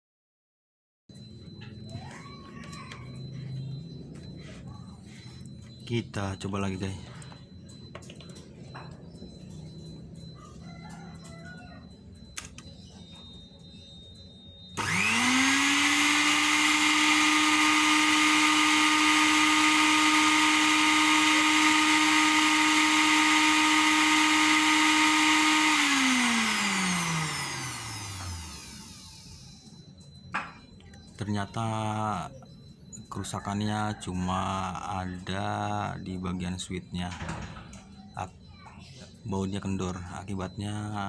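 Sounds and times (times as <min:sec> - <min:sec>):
blender motor whine: 0:14.7 - 0:30.0.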